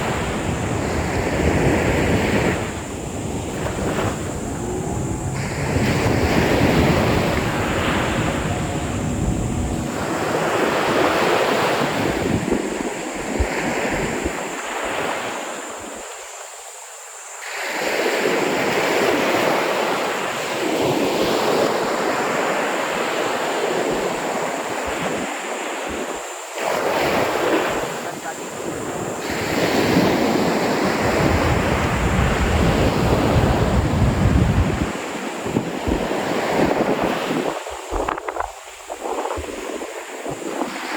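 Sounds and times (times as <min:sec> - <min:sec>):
wind buffeting microphone: 0:00.0 - 0:15.2, 0:28.6 - 0:40.9
ocean waves breaking: 0:00.0 - 0:15.8.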